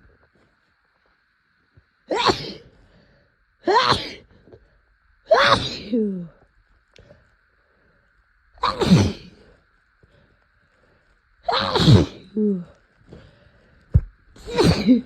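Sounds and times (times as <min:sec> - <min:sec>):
person sneezing: 0:02.1 - 0:02.6, 0:03.7 - 0:04.2, 0:05.3 - 0:06.2, 0:08.6 - 0:09.4, 0:11.5 - 0:12.2, 0:14.4 - 0:15.0.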